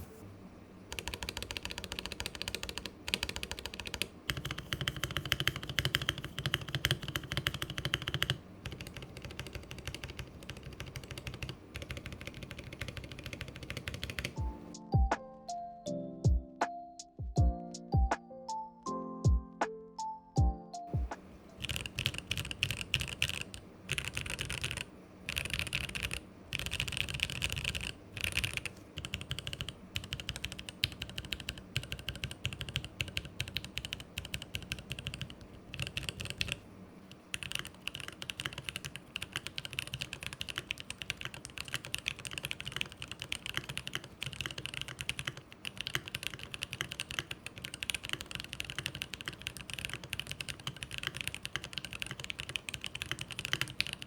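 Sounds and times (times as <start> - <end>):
mechanical keyboard typing: 0.9 - 14.5, 21.6 - 54.0.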